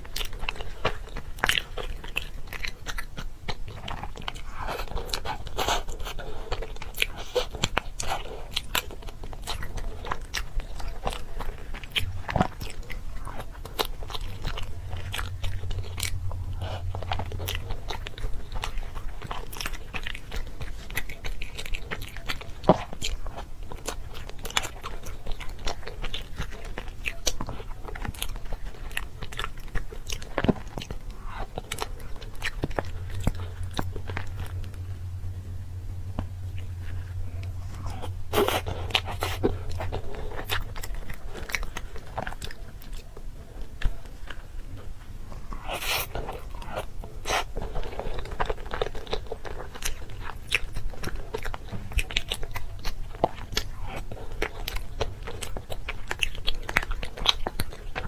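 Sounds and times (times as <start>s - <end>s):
chewing crunchy food: 0.0s - 58.0s.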